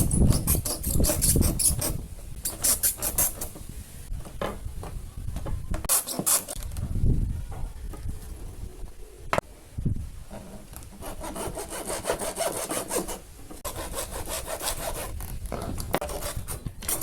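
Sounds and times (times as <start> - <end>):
metal fan grille scraping: 0.0 - 4.4, 10.2 - 17.0.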